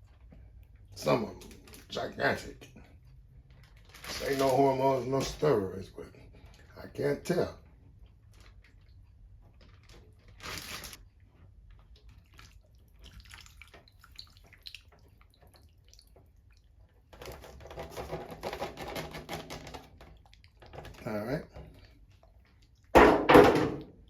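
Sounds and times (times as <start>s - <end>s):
plastic bag rustling: 3.4s - 5.4s, 9.5s - 11.5s
liquid pouring: 11.6s - 23.1s.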